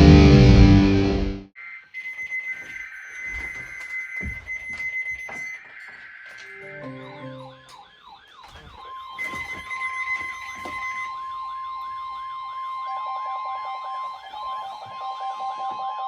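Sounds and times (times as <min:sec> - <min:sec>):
steady warning tone: 0:02.4 - 0:15.8
warbling siren: 0:05.6 - 0:16.0
second steady tone: 0:06.5 - 0:07.8.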